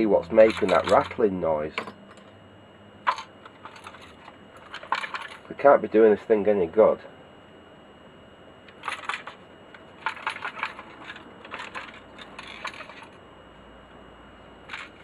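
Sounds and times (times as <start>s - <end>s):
loose part rattling inside device: 0.0s - 2.3s, 3.1s - 5.6s, 8.7s - 13.2s, 14.7s - 15.0s.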